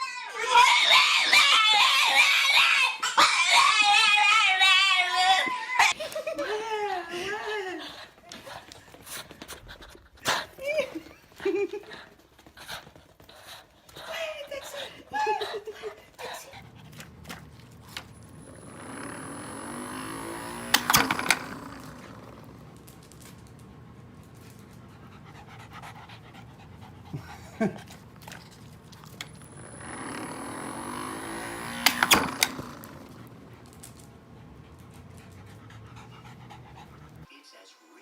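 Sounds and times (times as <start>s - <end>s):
dog panting: 6.4s - 37.3s
dog whining: 16.2s - 23.4s, 28.2s - 33.8s.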